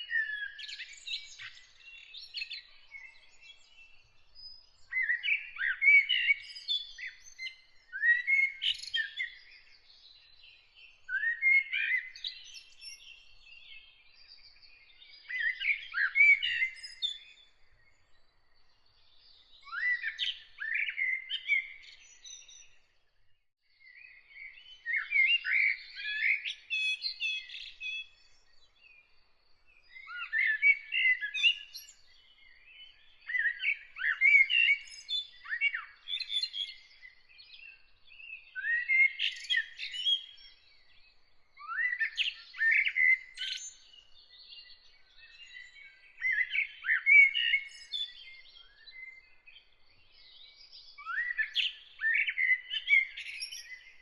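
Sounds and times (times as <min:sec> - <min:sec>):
songbird singing: 0:00.0 - 0:54.0.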